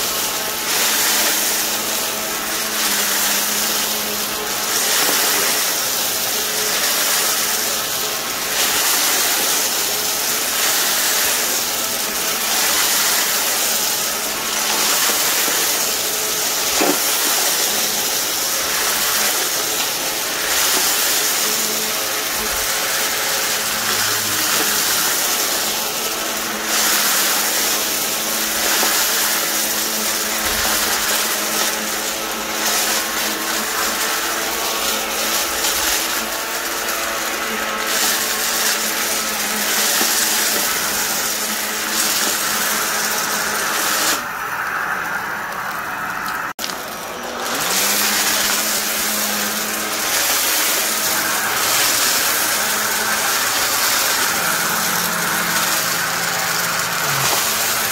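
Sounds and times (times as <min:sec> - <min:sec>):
vacuum cleaner running: 0:00.0 - 0:57.9.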